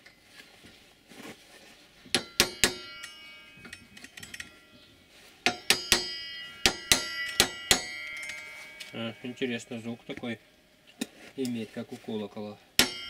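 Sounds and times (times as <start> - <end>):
saw blade struck ringing: 2.2 - 10.1, 12.8 - 13.0.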